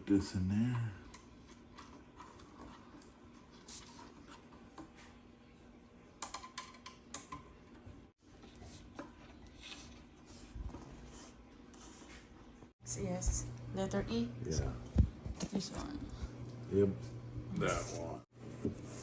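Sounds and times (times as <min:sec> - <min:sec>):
hardware clicks and taps: 0:06.2 - 0:07.5.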